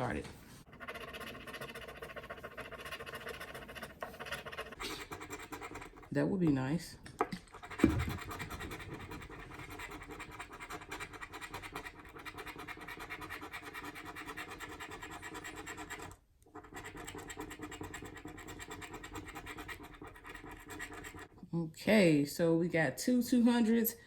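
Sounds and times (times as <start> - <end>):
lottery ticket being scratched: 0.0 - 6.7.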